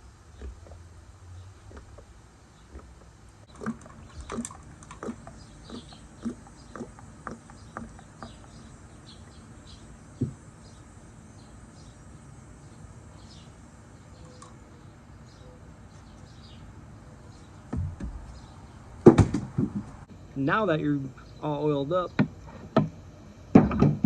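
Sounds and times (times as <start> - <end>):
oil glugging from bottle: 2.7 - 8.5.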